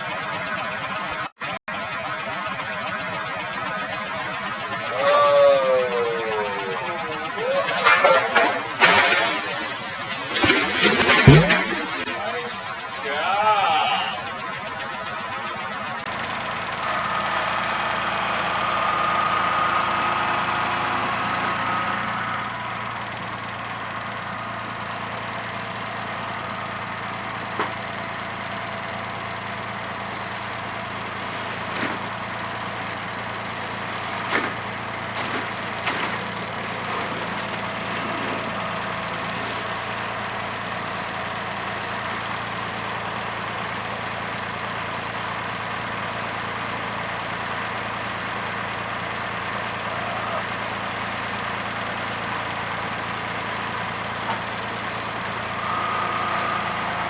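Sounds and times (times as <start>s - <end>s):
engine idling: 0.0s - 57.0s
sharp knocks and clunks: 10.4s - 12.2s.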